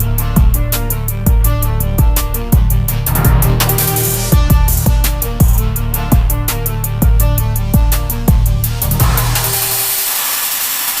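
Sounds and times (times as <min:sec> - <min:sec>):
sustained bass line: 0:00.0 - 0:09.8
deep kick drum hits: 0:00.4 - 0:09.4
hi-hat ticks: 0:02.3 - 0:11.0.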